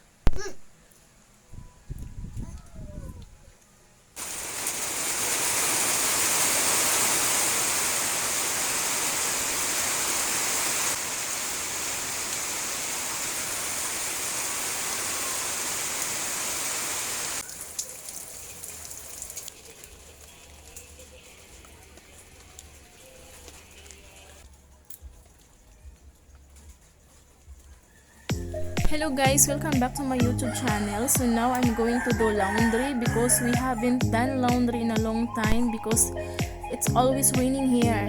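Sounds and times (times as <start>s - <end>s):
rushing water: 4.2s - 19.8s.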